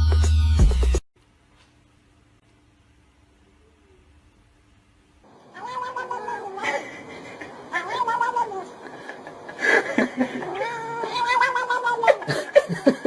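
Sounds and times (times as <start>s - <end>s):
cat yowling: 5.3s - 12.6s.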